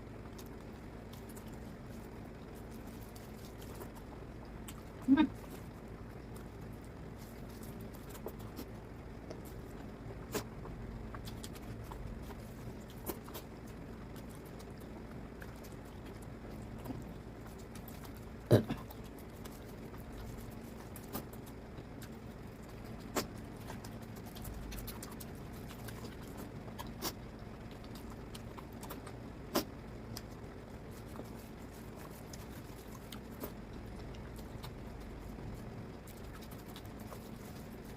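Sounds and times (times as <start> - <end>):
low steady hum: 0.0 - 37.9
wet eating clicks and smacks: 0.3 - 37.9.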